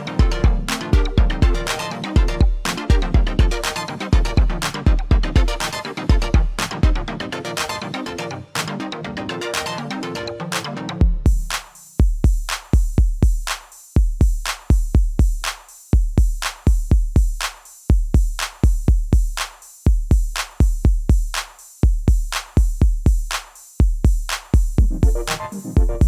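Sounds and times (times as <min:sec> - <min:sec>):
deep kick drums: 0:00.2 - 0:07.0, 0:11.0 - 0:26.0
sharp snare hits: 0:11.5 - 0:11.8.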